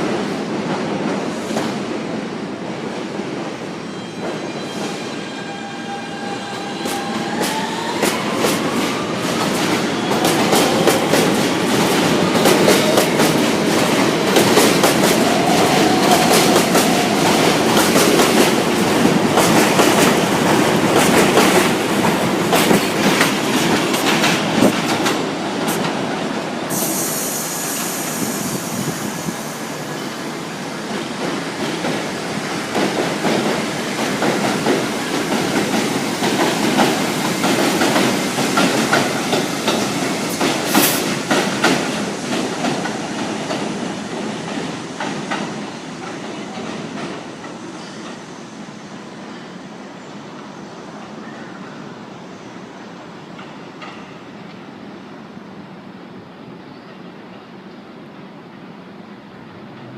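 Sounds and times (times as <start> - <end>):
train wheels rumbling and clacking: 6.1 - 51.1, 53.2 - 54.8
high-pitched hiss or squeal: 26.7 - 30.8.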